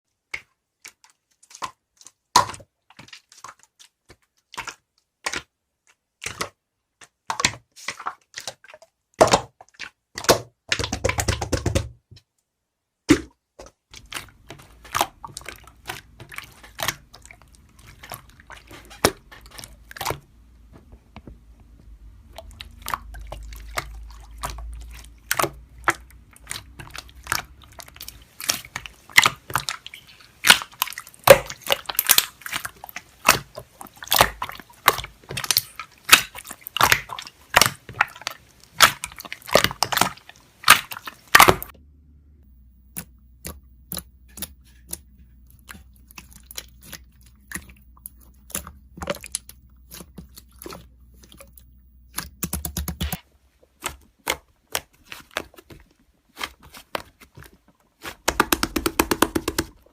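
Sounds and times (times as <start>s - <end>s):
faint low hum: 41.7s - 53.7s
sharp clicks and taps: 42.4s - 50.5s, 51.2s - 53.2s, 58.3s - 59.9s.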